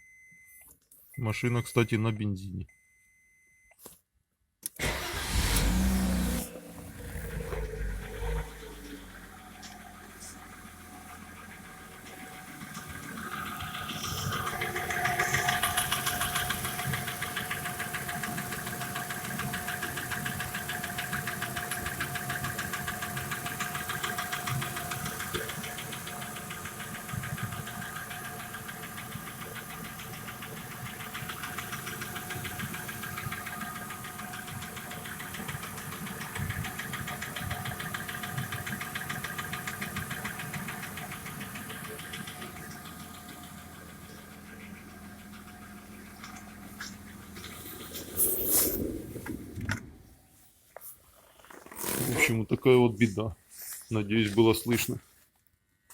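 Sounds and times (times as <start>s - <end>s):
car engine knocking: 6.6s - 48.2s.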